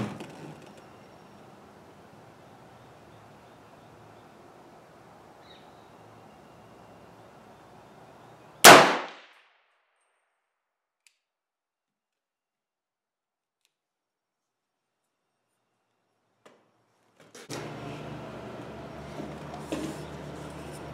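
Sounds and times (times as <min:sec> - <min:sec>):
rifle shot: 0:08.6 - 0:09.5.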